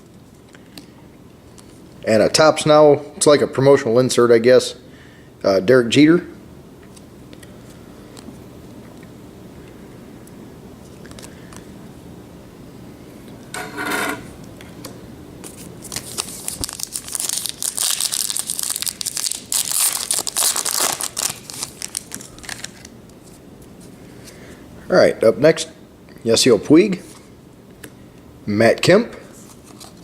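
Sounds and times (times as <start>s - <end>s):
plastic wrapper crinkling and tearing: 15.4s - 23.0s.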